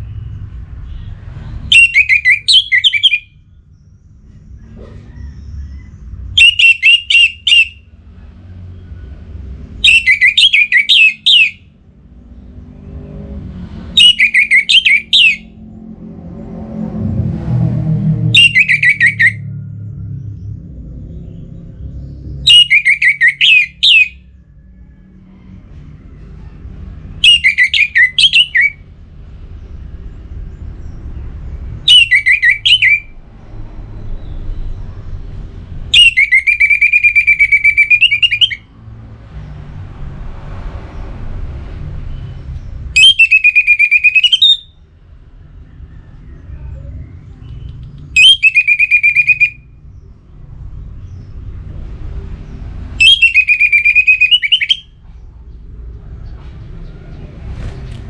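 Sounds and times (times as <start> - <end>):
low rumble: 15.4 - 22.5, 33.0 - 36.0.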